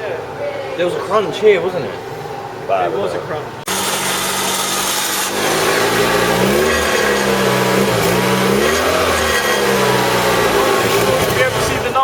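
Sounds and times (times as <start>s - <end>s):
car engine revving: 3.6s - 12.0s.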